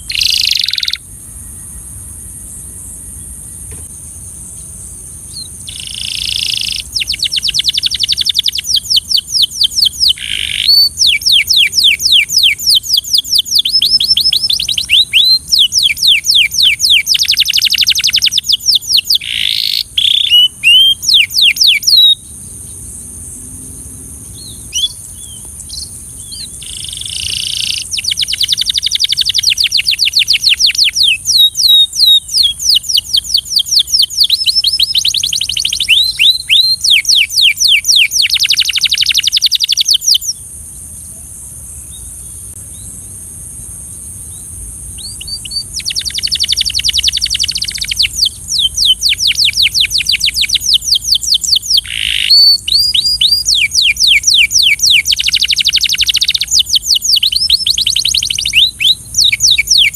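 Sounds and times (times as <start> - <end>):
canary singing trills: 0.0 - 2.4, 3.0 - 40.4, 44.2 - 59.9
steady high hiss: 0.0 - 59.9.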